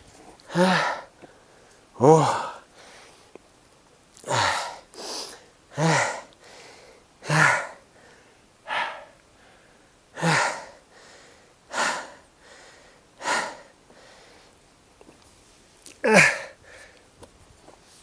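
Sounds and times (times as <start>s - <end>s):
man breathing hard: 0.5s - 3.3s, 4.2s - 14.6s, 16.0s - 17.1s.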